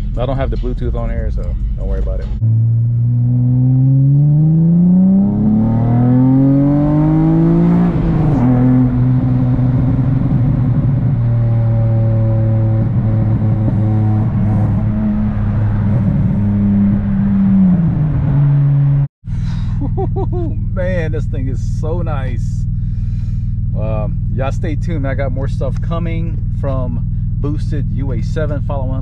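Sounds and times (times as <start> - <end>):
car engine accelerating: 0.0 - 29.0.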